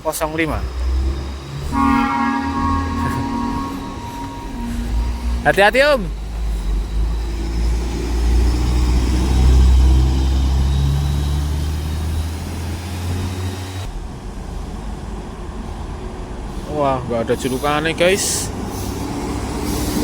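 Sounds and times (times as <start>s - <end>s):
bus diesel engine passing: 0.0s - 20.0s.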